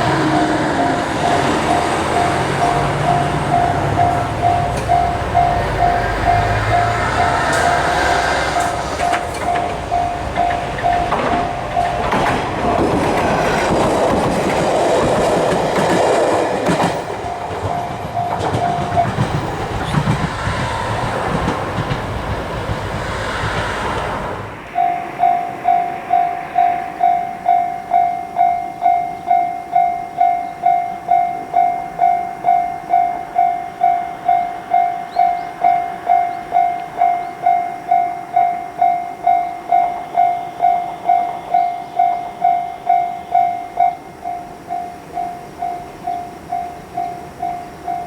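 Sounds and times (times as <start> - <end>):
level-crossing warning bell ringing: 0.0 - 14.0, 14.7 - 22.8, 24.2 - 48.0
wheels clacking over rail joints: 0.0 - 24.8
train rumble: 0.0 - 48.0.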